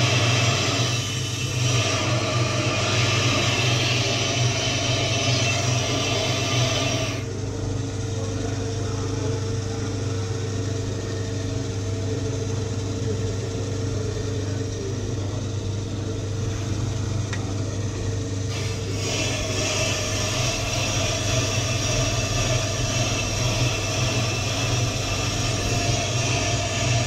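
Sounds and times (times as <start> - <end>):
tool bit scraping rotor: 0.0 - 7.2, 18.5 - 27.0
brake lathe motor hum: 0.0 - 7.4, 11.8 - 27.0.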